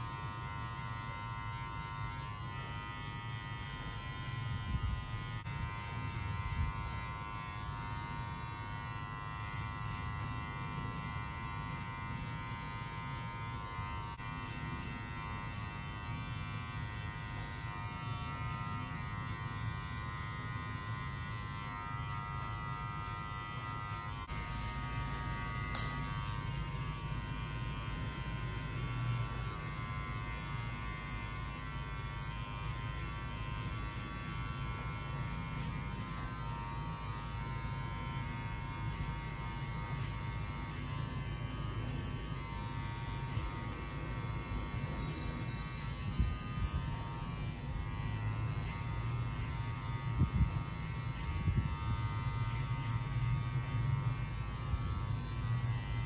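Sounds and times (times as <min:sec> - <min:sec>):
electric hair clipper buzzing: 0:00.0 - 0:56.0
sharp click: 0:25.7 - 0:26.0.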